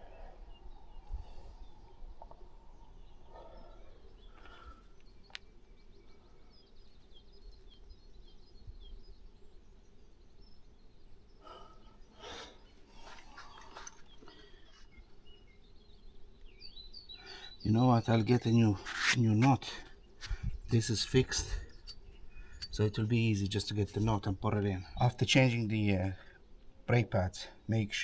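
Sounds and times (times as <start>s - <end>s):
faint background noise: 0.0s - 28.0s
small birds chirping: 0.0s - 28.0s
soft scrapes or rustles: 18.8s - 20.6s.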